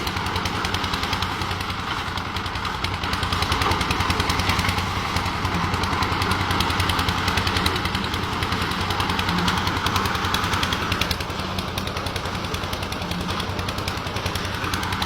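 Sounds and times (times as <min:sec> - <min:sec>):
heavy machinery chattering: 0:00.0 - 0:15.0.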